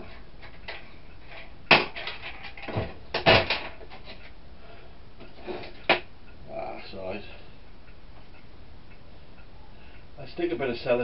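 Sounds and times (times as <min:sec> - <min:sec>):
hard objects knocking and clattering: 0:00.4 - 0:04.2.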